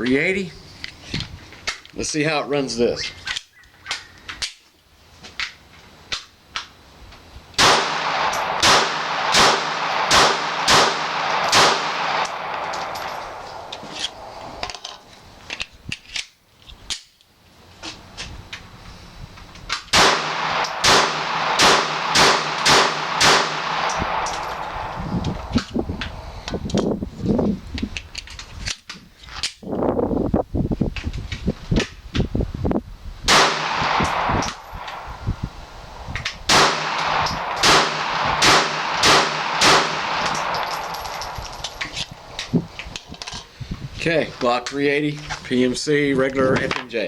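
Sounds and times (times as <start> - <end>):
pistol firing: 7.6 - 13.8, 19.9 - 25.0, 33.3 - 35.2, 36.5 - 41.7.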